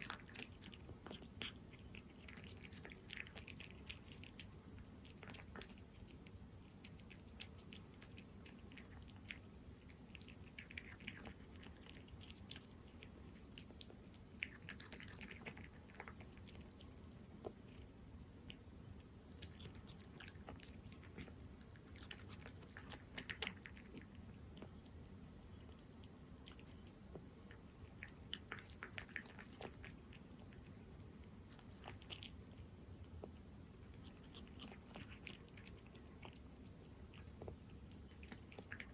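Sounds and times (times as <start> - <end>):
cat chewing wet food: 0.0 - 38.9.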